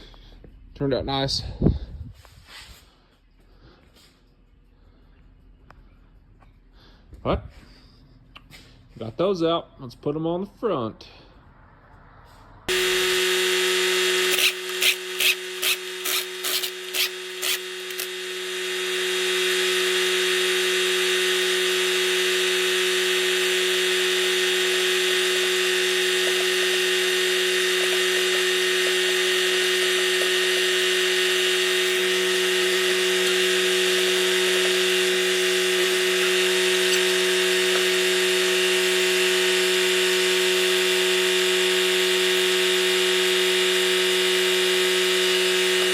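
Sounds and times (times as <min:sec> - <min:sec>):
motor-driven machine humming: 0:12.7 - 0:45.9.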